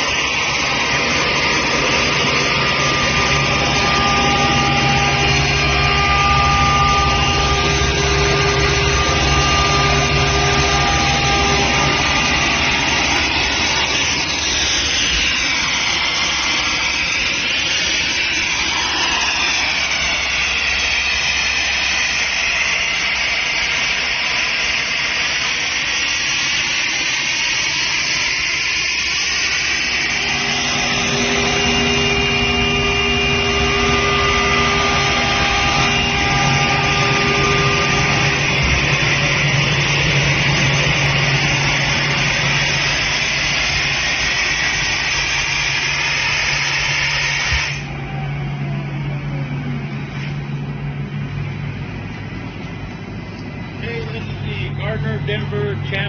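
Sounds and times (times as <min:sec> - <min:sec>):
air compressor running: 0:00.0 - 0:56.0
compressor whine: 0:00.0 - 0:56.0.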